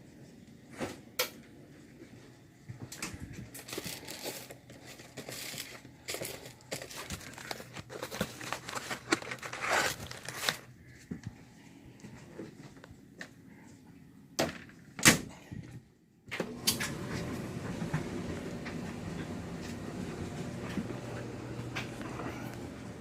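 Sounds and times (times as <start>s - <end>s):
crinkly material rustling: 1.8s - 11.3s.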